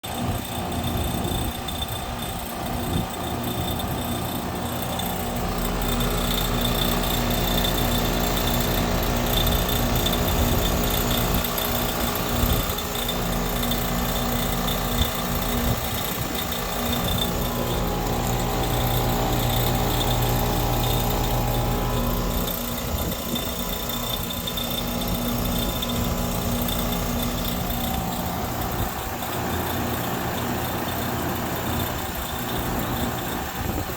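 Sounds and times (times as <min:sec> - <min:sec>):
heat pump humming: 0:00.0 - 0:33.9
rattling clicking noise: 0:00.1 - 0:33.9.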